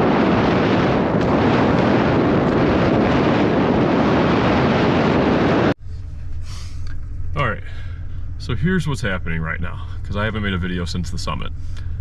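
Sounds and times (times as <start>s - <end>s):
wind buffeting microphone: 0.0s - 5.8s.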